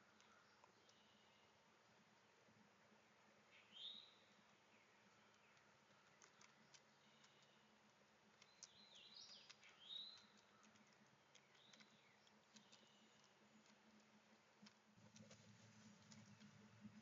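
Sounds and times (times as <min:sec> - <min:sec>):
short bird ticks: 0:00.0 - 0:01.4, 0:04.8 - 0:16.7.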